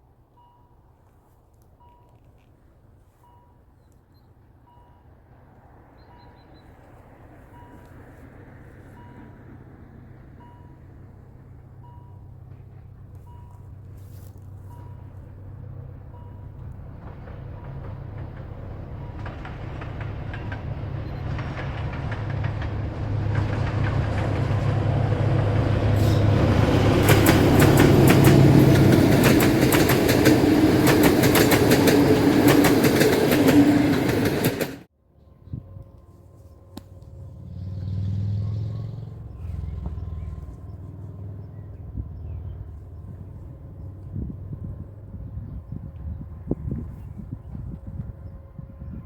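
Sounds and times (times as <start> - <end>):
locomotive engine drone: 7.0 - 49.0
train wheels clattering over rail joints: 16.4 - 34.9.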